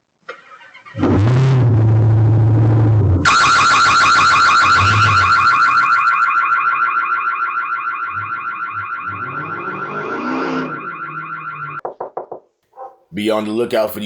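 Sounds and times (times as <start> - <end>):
rapidly pulsing alarm tone: 3.2 - 11.8.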